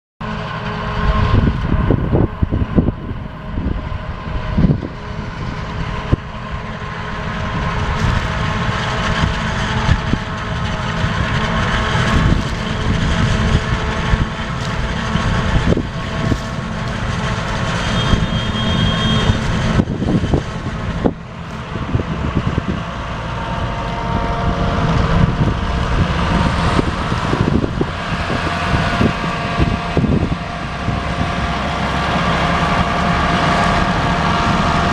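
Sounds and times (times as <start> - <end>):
forage harvester rumbling: 0.2 - 34.9
machine whine: 0.2 - 34.9.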